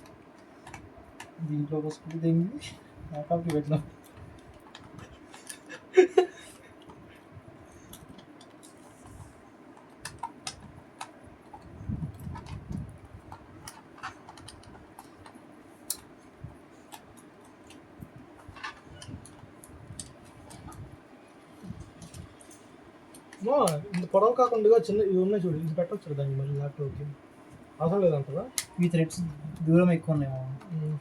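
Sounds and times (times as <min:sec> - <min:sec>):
plastic keyboard parts clicking: 0:00.0 - 0:02.3, 0:03.2 - 0:05.7, 0:09.8 - 0:16.1.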